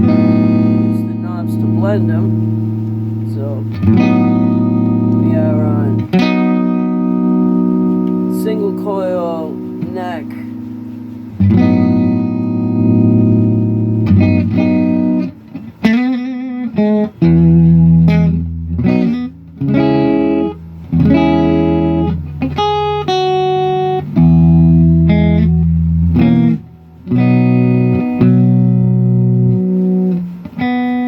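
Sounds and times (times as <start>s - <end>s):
electric guitar chords: 0.0s - 31.0s.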